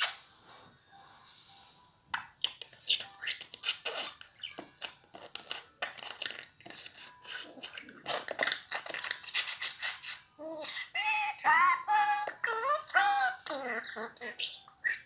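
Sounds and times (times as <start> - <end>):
budgerigar chattering: 7.2 - 15.0.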